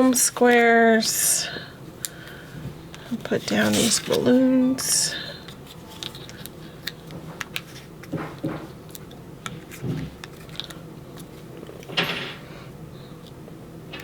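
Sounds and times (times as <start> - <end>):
paper rustling: 3.0 - 4.9.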